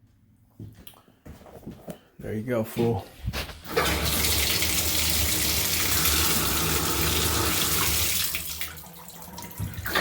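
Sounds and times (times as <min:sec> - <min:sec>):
shower water gushing: 0:03.7 - 0:10.0.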